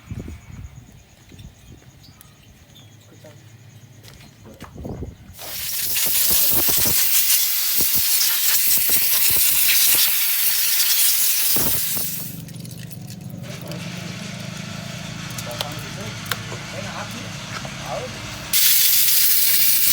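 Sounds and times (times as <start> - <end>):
pressurised jet hissing: 5.4 - 12.4, 17.8 - 19.9.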